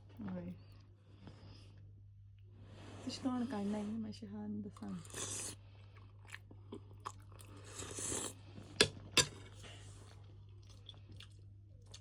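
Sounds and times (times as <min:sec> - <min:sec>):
chewing: 0:04.8 - 0:12.0
person slurping soup: 0:07.5 - 0:08.4.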